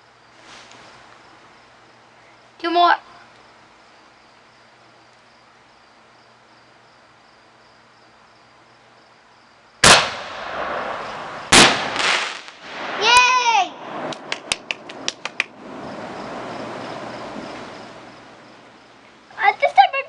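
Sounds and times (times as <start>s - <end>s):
crickets chirping: 0.0s - 20.0s
firework bangs with rumble: 9.8s - 13.2s.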